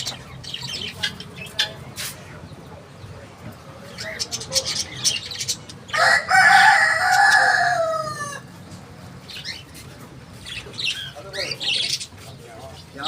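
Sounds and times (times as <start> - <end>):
rooster crowing: 5.9 - 8.5.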